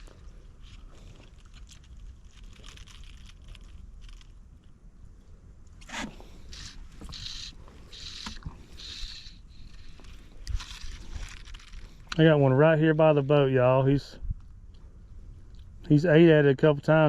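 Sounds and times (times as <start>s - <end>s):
wind rumble on microphone: 14.1s - 15.9s.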